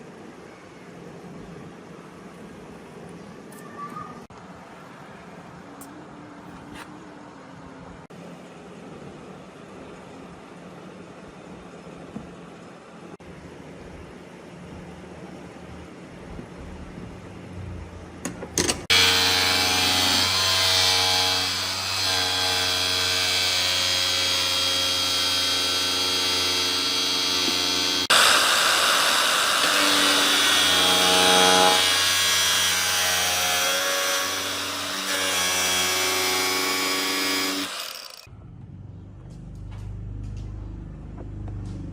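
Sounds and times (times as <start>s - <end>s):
electric motor whine: 18.9s - 38.3s.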